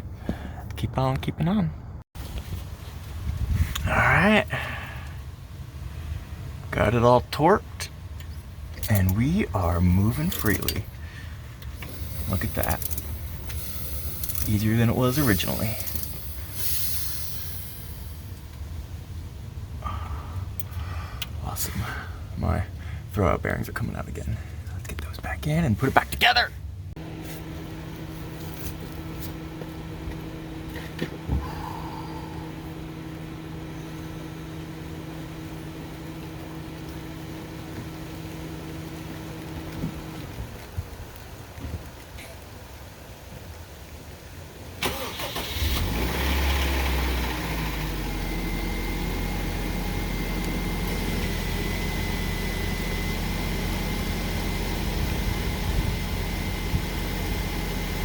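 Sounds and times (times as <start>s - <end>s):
steady mechanical hum: 0.1s - 44.7s, 45.3s - 58.0s
car engine idling: 2.2s - 41.2s, 44.8s - 58.0s
starter cranking engine: 8.8s - 18.2s, 44.8s - 58.0s.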